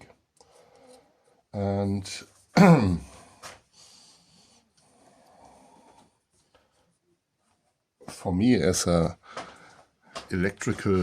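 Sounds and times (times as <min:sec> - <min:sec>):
faint handling noise: 0:09.3 - 0:11.0.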